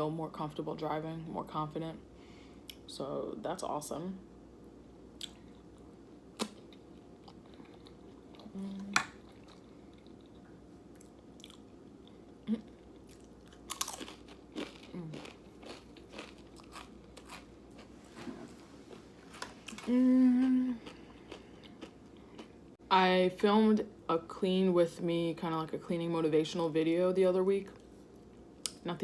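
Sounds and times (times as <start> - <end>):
person chewing crunchy food: 5.2 - 19.9, 20.7 - 22.8.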